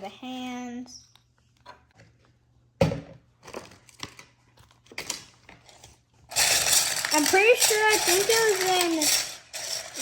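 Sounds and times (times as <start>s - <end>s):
plastic toy parts clicking: 6.3s - 10.0s.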